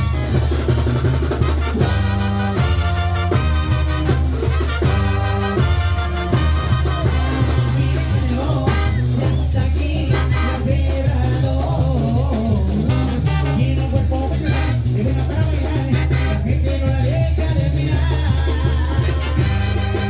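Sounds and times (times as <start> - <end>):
horn melody: 0.0 - 11.2, 12.8 - 16.8, 18.9 - 20.0
band playing upbeat music: 0.0 - 20.0
heavy bass line: 0.0 - 20.0.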